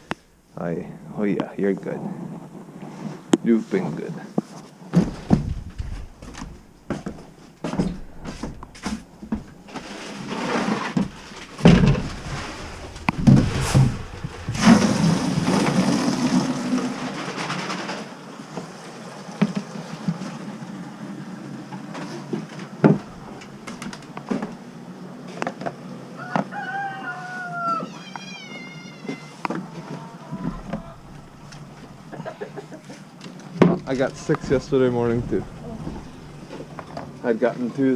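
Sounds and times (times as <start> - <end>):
knocks: 11.0 - 15.8
drawn-out animal call: 26.4 - 33.0.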